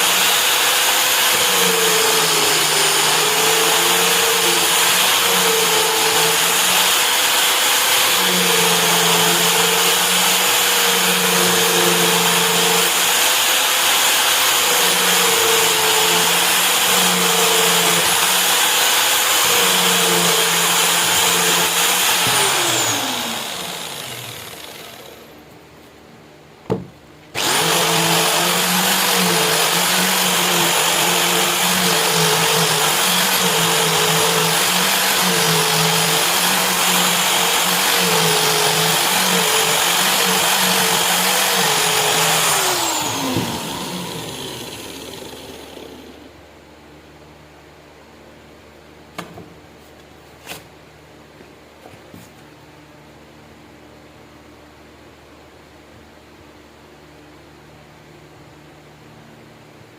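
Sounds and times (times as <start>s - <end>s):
electric power tool running: 0.0s - 25.4s, 27.4s - 46.3s
short knock: 26.7s - 27.0s.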